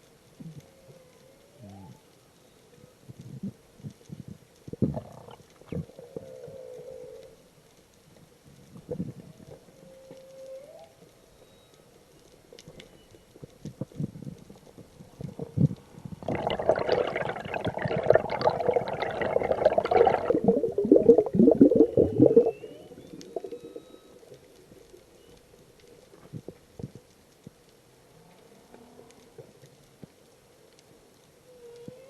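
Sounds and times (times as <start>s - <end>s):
faint high whale calls: 5.9s - 7.5s, 9.7s - 11.9s, 19.9s - 25.5s, 31.4s - 32.0s
low whale pulses: 15.3s - 24.4s
whale gurgling call: 16.2s - 24.4s.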